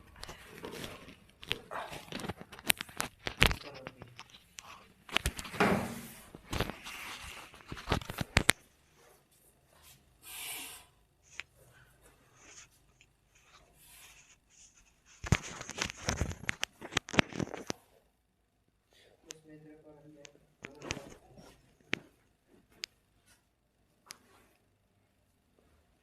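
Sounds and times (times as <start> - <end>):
clothing and table cover rustling: 0.0 - 10.1, 11.5 - 18.0, 24.1 - 24.8.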